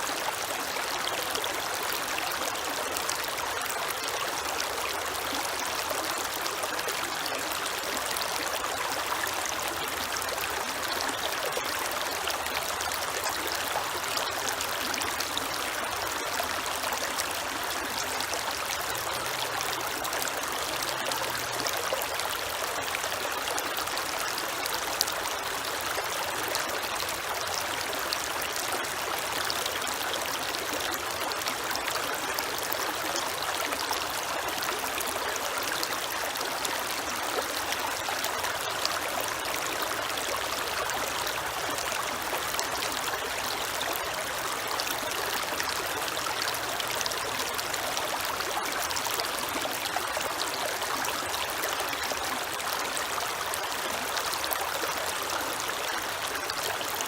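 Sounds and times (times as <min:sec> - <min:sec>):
creek water rushing and trickling: 0:00.0 - 0:57.0.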